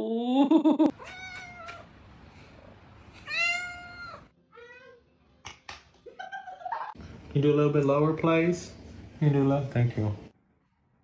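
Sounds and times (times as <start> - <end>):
cat meowing: 1.0 - 1.9, 3.2 - 5.0.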